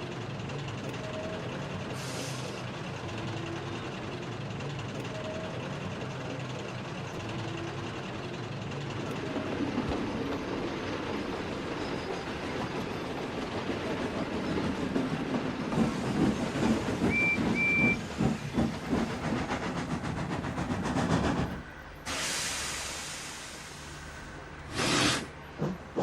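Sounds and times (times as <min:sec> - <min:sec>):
steam locomotive chuffing: 0:00.0 - 0:26.0
high train whistle peeps: 0:17.0 - 0:18.1
loud hiss of steam: 0:22.0 - 0:25.8.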